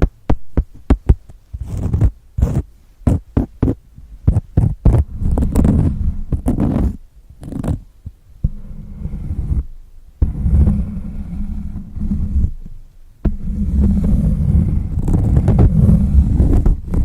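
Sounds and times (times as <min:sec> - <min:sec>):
soft low thuds: 0:00.0 - 0:08.7, 0:11.7 - 0:17.0
tapping and scratching on a pad: 0:00.0 - 0:17.0.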